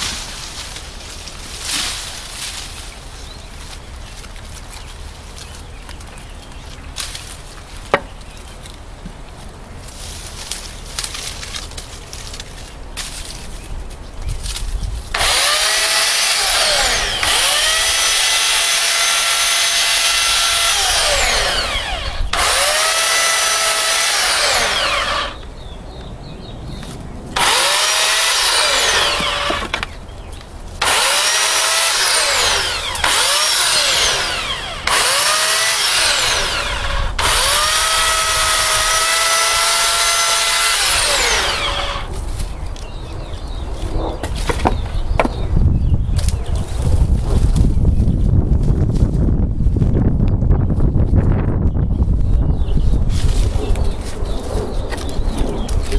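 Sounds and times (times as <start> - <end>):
electric chainsaw whining: 15.1 - 25.5, 27.4 - 29.9, 30.8 - 42.1.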